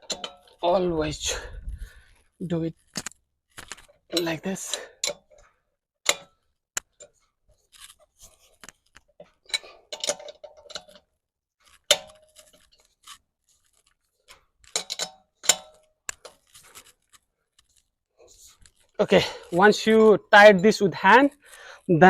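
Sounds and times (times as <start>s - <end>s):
lug nuts clicking and clinking: 0.0s - 0.6s, 6.1s - 7.2s, 8.6s - 11.1s, 11.7s - 17.8s.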